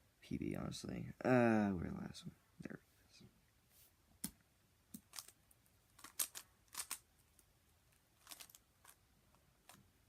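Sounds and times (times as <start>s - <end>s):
plastic puzzle cube clicking: 6.0s - 7.0s.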